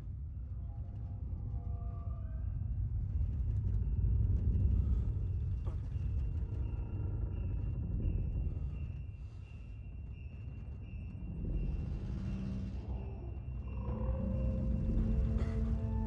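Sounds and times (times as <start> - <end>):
deep low rumble: 11.3 - 16.0.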